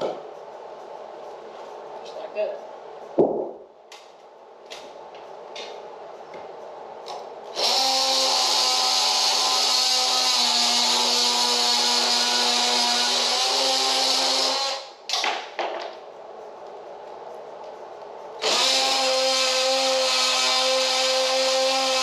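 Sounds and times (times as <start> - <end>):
electric power tool running: 7.5 - 14.9, 18.4 - 22.0.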